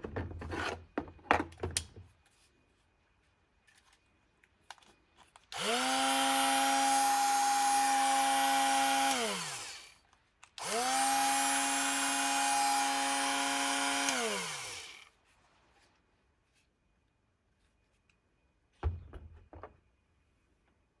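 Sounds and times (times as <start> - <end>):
angle grinder whine: 5.6 - 9.9, 10.6 - 15.0.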